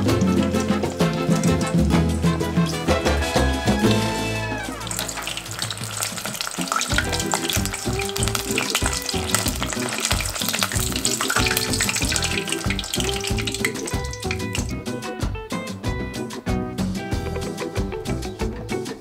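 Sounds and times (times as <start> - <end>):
fish sizzling in hot oil: 0.0 - 14.8
background music: 0.0 - 19.0.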